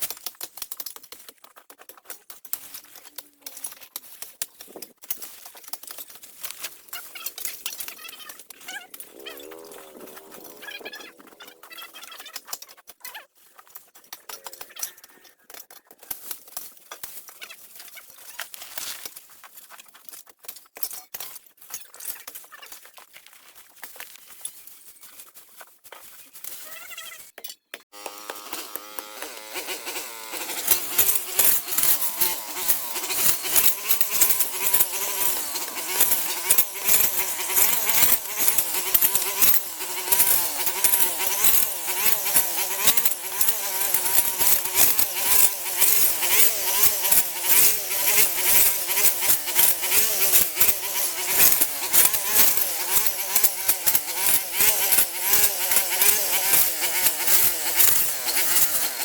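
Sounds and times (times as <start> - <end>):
small power tool engine running: 8.9 - 12.0, 27.9 - 59.0
rapid clatter: 28.8 - 59.0.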